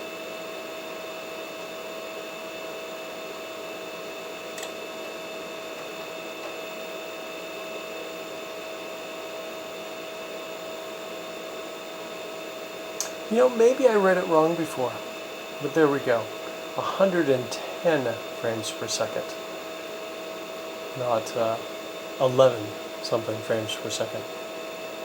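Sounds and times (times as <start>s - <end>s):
computer fan hiss: 0.0s - 25.0s
high-pitched whine: 3.5s - 25.0s.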